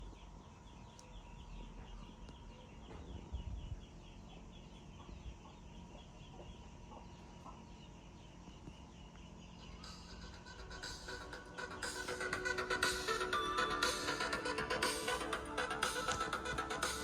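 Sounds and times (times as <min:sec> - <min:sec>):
rapid high chirping: 0:09.3 - 0:17.0.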